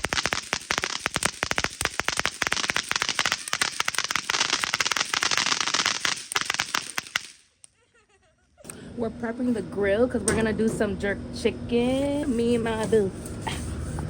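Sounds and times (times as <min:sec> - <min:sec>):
firecrackers popping: 0:00.0 - 0:07.8.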